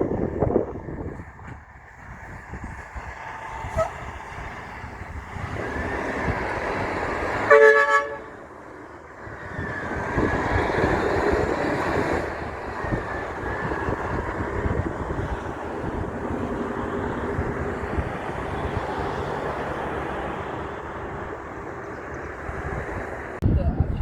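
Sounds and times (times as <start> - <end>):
trucks passing on road: 0.0 - 23.7
short horn toot: 7.5 - 8.3.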